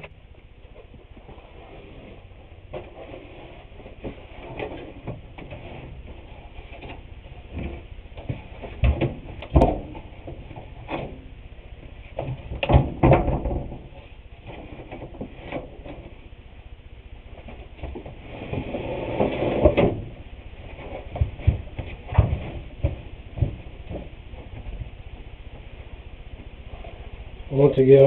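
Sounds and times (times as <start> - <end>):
objects knocking and bumping: 3.8 - 11.3, 12.1 - 16.2, 17.4 - 25.0
heavy thumps: 19.6 - 27.4.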